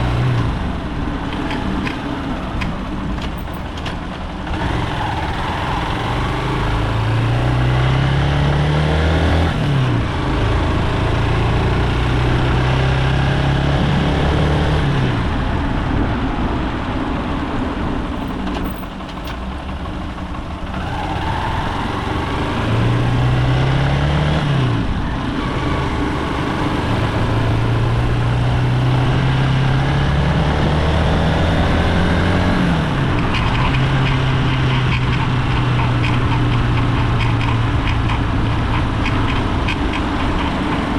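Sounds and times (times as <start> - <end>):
motorcycle engine revving: 0.0 - 15.6, 18.0 - 40.9.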